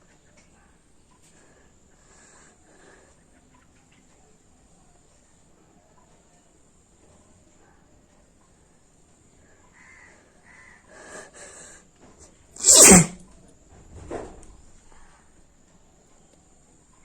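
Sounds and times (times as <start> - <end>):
catching breaths: 1.2 - 3.4, 10.8 - 12.0
woman sneezing: 12.6 - 13.2.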